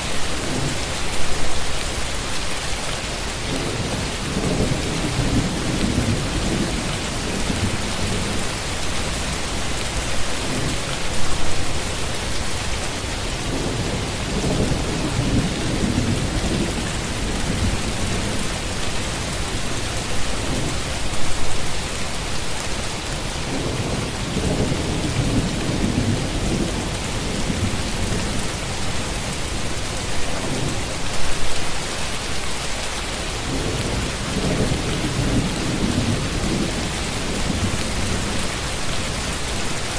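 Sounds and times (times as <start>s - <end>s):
heavy rain falling: 0.0s - 39.9s
low thunder rumbling: 3.5s - 12.3s, 13.4s - 21.7s, 23.4s - 31.4s, 33.5s - 39.6s.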